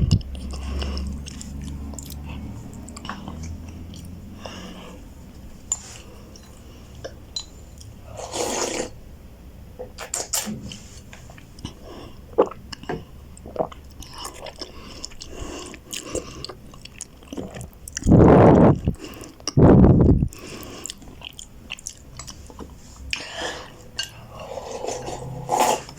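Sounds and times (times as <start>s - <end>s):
person chewing noodles: 0.0s - 5.1s, 11.3s - 19.6s, 20.2s - 25.9s.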